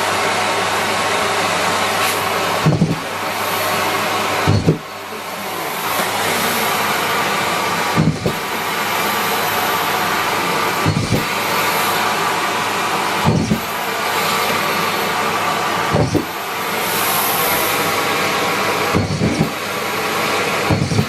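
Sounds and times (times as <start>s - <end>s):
vacuum cleaner running: 0.0s - 21.0s
low thump in vacuum hose: 2.1s - 3.1s, 4.4s - 4.9s, 7.9s - 8.4s, 10.8s - 11.4s, 13.2s - 13.8s, 15.9s - 16.3s, 18.9s - 19.6s, 20.6s - 21.0s.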